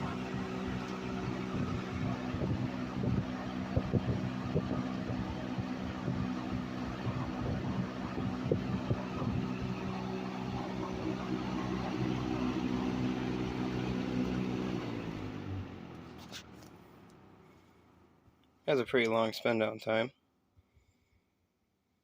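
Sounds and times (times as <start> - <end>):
rush of air from fan: 0.0 - 16.6
box fan motor hum: 0.0 - 17.8.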